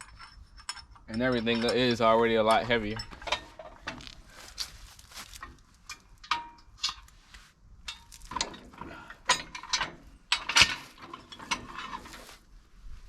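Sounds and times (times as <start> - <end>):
metal parts clinking and clanking: 0.0 - 4.2, 5.1 - 7.2, 7.8 - 12.3.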